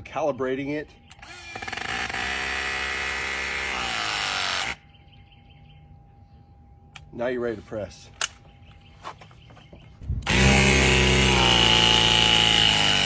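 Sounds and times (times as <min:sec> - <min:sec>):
press tool motor whining: 0:01.1 - 0:04.8, 0:10.2 - 0:13.0.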